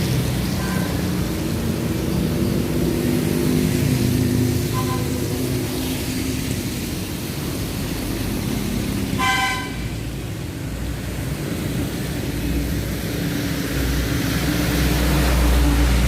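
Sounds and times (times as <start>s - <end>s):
vehicle horn toot: 4.7s - 5.2s, 9.2s - 9.8s.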